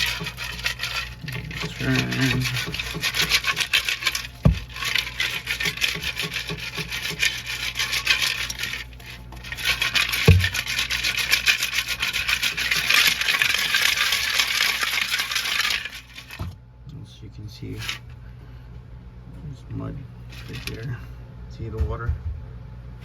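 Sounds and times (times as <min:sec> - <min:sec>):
salt pellets rattling in housing: 0:00.0 - 0:16.6, 0:17.6 - 0:18.0, 0:20.2 - 0:21.1.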